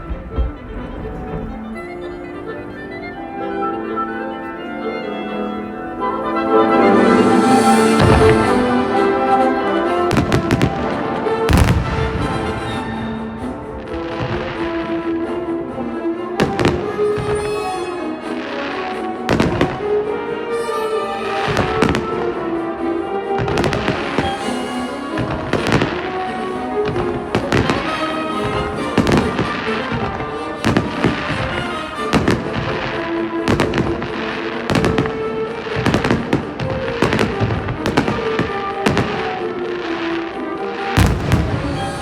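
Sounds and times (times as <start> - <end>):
fireworks booming: 0.0 - 2.2, 7.5 - 15.4, 16.4 - 18.0, 18.6 - 20.0, 21.4 - 22.4, 23.4 - 40.2, 40.8 - 42.0
music with sustained notes: 0.0 - 42.0.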